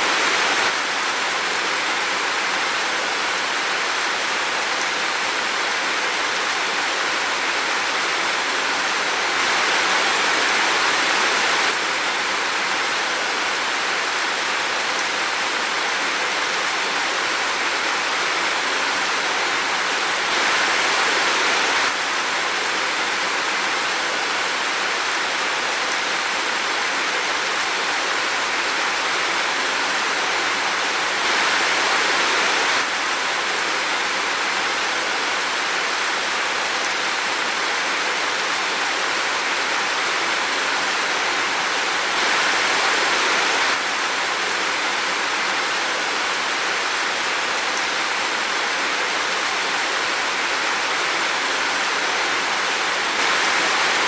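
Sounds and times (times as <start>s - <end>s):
heavy rain: 0.0s - 54.0s.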